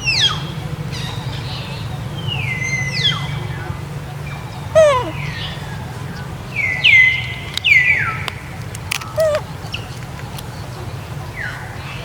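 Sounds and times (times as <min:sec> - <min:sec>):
macaques high-pitched calls: 0:04.4 - 0:09.9.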